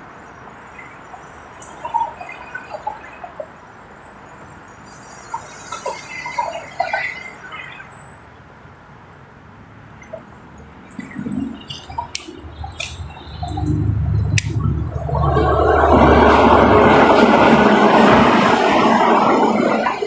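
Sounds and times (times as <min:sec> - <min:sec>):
bird chirps: 0:00.8 - 0:03.6, 0:04.3 - 0:08.2, 0:10.8 - 0:14.8
sharp clicks: 0:10.9 - 0:14.7.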